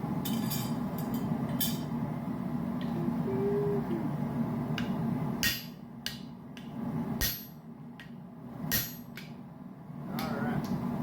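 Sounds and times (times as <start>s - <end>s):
hammer striking metal punch: 4.8s - 9.4s.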